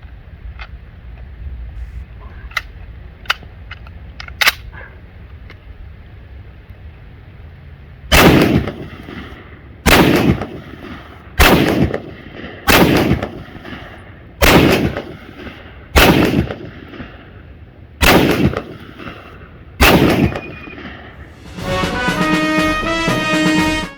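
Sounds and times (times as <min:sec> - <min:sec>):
rifle shots with short echo: 0:08.1 - 0:17.4, 0:18.0 - 0:21.4
music: 0:21.3 - 0:23.9.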